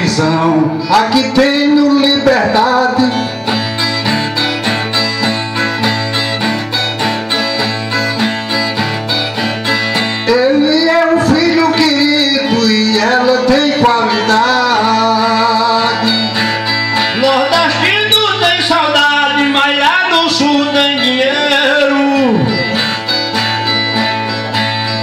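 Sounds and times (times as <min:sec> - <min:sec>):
man singing long notes: 0:00.0 - 0:03.5, 0:10.2 - 0:23.1
plucked guitar pattern: 0:00.0 - 0:25.0.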